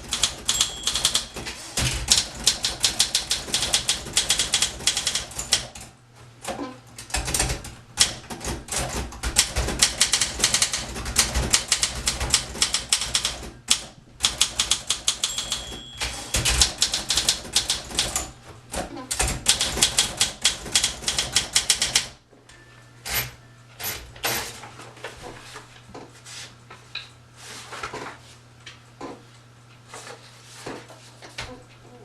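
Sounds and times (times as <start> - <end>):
typewriter keystroke clacks: 0.0 - 5.9, 7.0 - 22.2
typewriter bell ring: 0.2 - 1.6, 14.9 - 16.9.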